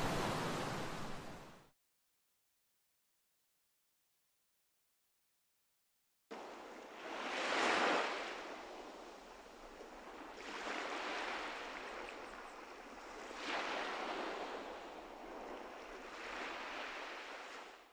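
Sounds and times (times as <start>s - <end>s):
ocean waves breaking on shore: 0.0s - 1.7s, 6.3s - 17.9s.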